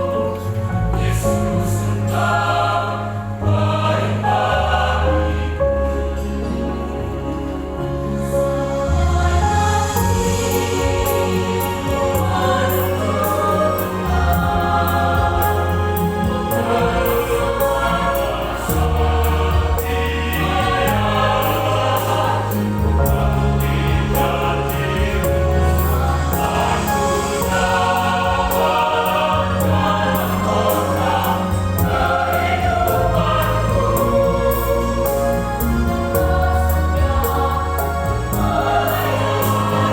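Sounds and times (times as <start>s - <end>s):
church choir singing gospel: 0.0s - 39.9s
instrumental accompaniment with beat: 10.0s - 39.9s.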